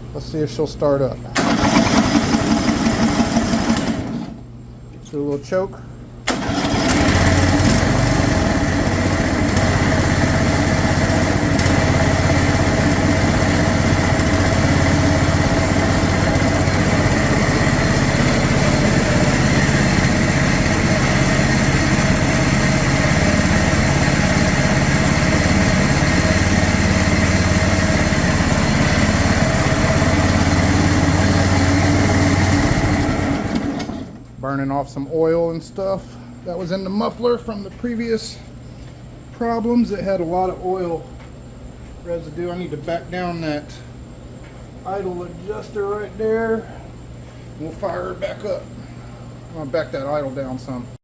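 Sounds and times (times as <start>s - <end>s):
mower engine fast idle: 1.4s - 4.4s, 6.3s - 34.2s.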